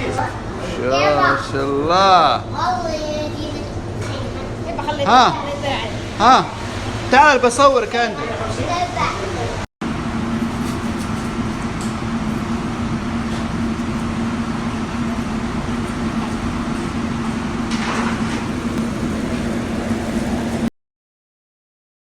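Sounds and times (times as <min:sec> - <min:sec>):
vehicle running hum: 0:09.9 - 0:20.7.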